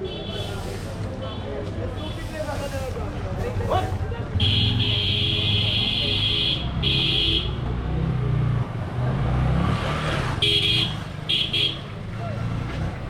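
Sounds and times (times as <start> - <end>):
vehicle horn honking: 4.4 - 7.6, 10.4 - 11.8.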